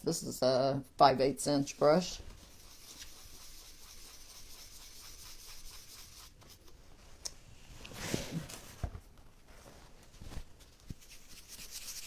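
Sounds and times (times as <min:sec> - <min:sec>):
stencil brush scratchy brushing: 0:01.6 - 0:06.6, 0:11.0 - 0:12.0.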